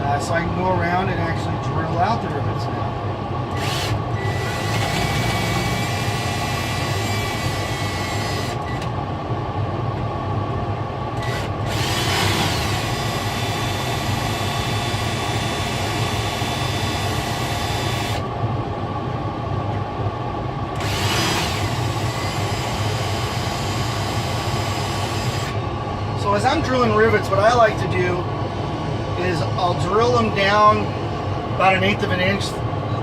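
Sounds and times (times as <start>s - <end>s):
cordless drill drilling rivets: 3.6s - 8.9s, 11.2s - 18.2s, 20.8s - 25.5s.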